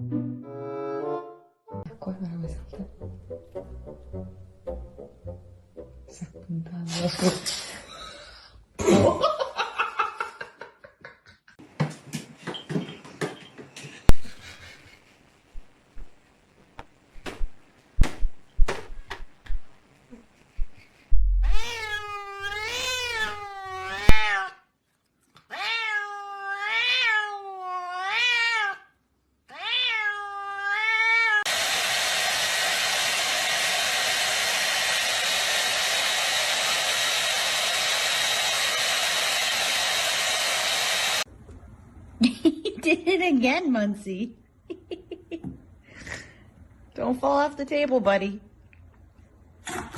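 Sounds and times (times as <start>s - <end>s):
knocks and taps: 17.2s - 19.7s
cat yowling: 21.4s - 24.6s, 25.5s - 28.9s, 29.5s - 31.5s.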